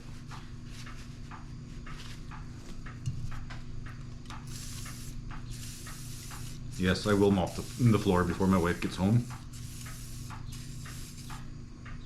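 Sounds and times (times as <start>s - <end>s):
spray can hissing: 4.3s - 11.5s
metal tool scratching: 4.6s - 11.4s.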